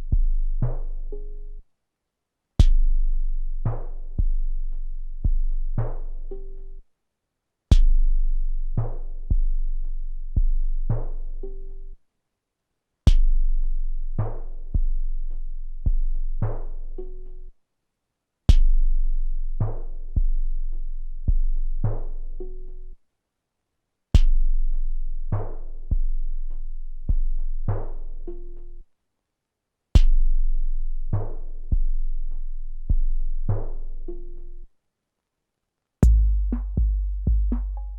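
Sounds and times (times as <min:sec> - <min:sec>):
deep kick drums: 0:00.0 - 0:01.0, 0:02.6 - 0:06.0, 0:07.7 - 0:11.1, 0:13.1 - 0:13.5, 0:36.0 - 0:37.9.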